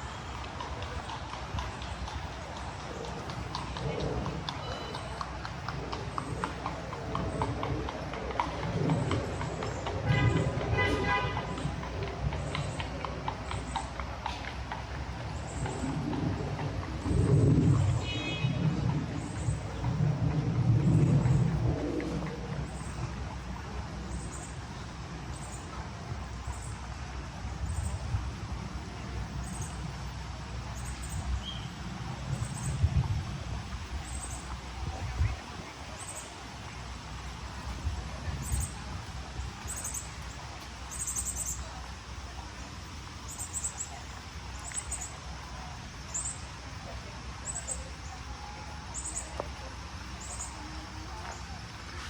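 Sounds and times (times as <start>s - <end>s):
steady low rumble: 0.0s - 52.0s
low rumble: 15.3s - 24.6s
small birds chirping: 30.7s - 32.9s, 33.8s - 51.6s.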